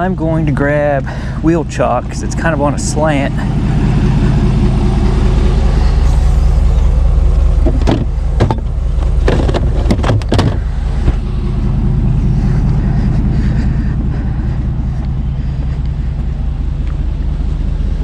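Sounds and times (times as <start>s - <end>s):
vehicle engine idling: 0.0s - 18.0s.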